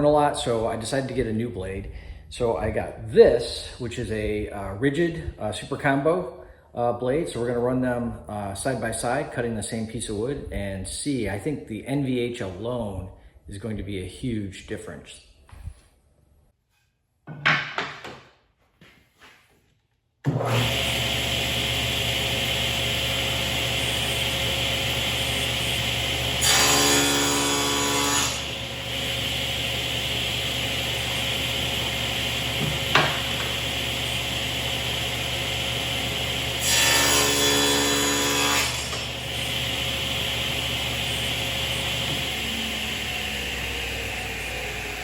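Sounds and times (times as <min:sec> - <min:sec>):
saw cutting wood with ringing: 0:20.3 - 0:45.0
table saw whine: 0:20.3 - 0:45.0.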